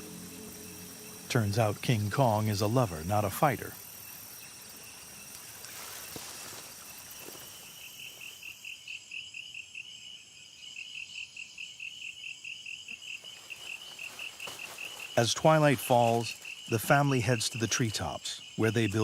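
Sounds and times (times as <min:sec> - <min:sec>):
soft steady hiss: 0:00.0 - 0:08.8
cricket chirping: 0:00.0 - 0:19.0.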